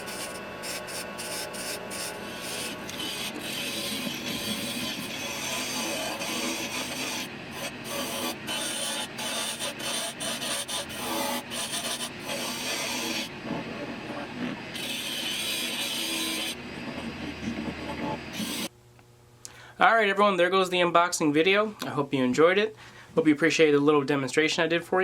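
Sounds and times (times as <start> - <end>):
lathe tool scraping spinning wood: 0.0 - 18.7.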